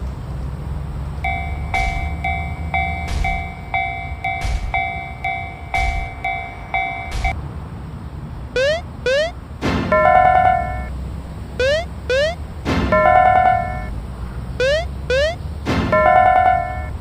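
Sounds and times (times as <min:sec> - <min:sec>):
passing train rumble: 0:00.0 - 0:17.0
level crossing warning bell: 0:01.2 - 0:07.4, 0:08.6 - 0:14.0, 0:14.6 - 0:17.0
heavy train thumps: 0:01.3 - 0:07.4.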